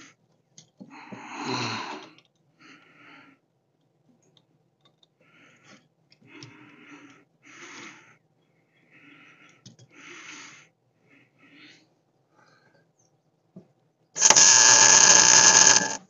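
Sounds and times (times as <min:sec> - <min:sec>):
man breathing hard: 0:05.2 - 0:12.9.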